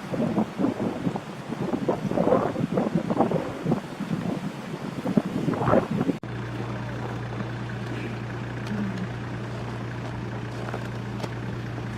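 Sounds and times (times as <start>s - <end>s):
wind buffeting microphone: 0.0s - 6.3s
vehicle engine drone: 0.0s - 11.9s.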